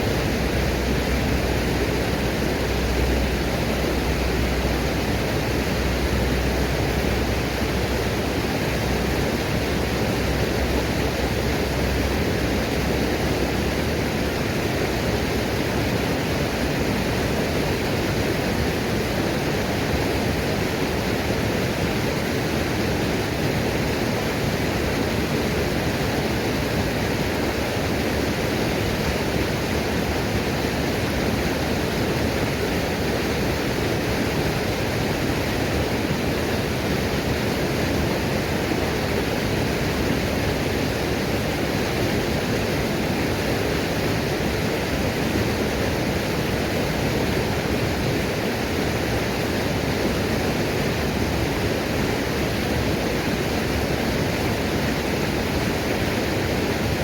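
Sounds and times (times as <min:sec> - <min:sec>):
waterfall pouring and splashing: 0:00.0 - 0:57.0.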